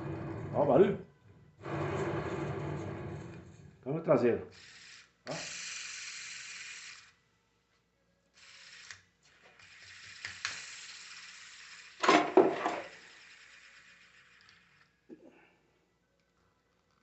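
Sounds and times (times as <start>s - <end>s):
ball bearing rattling as it spins: 4.5s - 7.1s, 8.4s - 14.9s.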